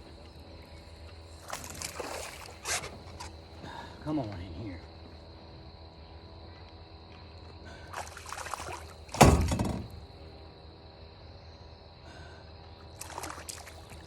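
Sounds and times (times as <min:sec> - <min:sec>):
water splashing: 0:01.3 - 0:03.4, 0:07.9 - 0:10.1, 0:13.0 - 0:14.0
loud thump: 0:09.2 - 0:10.0.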